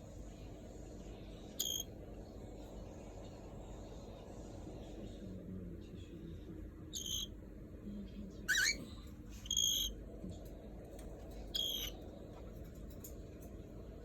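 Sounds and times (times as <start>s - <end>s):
cockatiel chirping: 1.6s - 1.8s, 7.0s - 7.3s, 8.5s - 8.8s, 9.4s - 9.9s, 11.6s - 12.0s.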